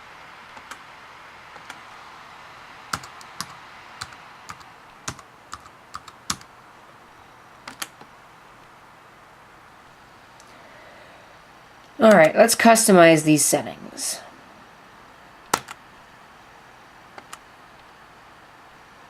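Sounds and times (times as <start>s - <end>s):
typing on laptop keyboard: 0.6s - 0.8s, 1.5s - 1.8s, 2.9s - 6.5s, 7.6s - 8.1s, 15.5s - 15.8s, 17.2s - 17.4s.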